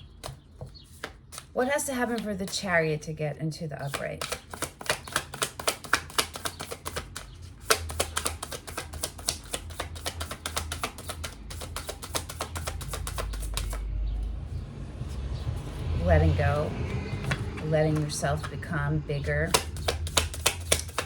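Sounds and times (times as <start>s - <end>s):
cards being shuffled: 0.2s - 2.7s, 3.8s - 13.8s, 16.6s - 18.6s, 19.4s - 21.0s.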